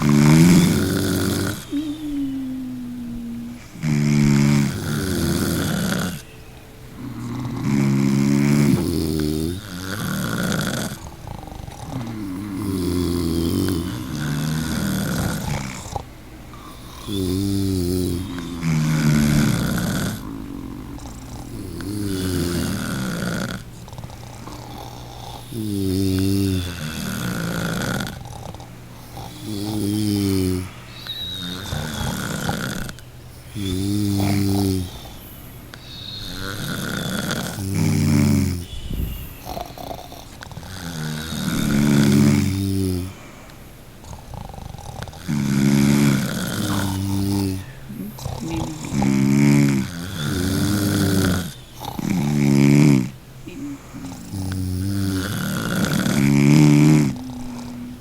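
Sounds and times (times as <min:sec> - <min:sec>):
person snoring: 0:00.0 - 0:06.3, 0:06.9 - 0:43.4, 0:44.0 - 0:58.0
breathy breaths: 0:00.0 - 0:58.0.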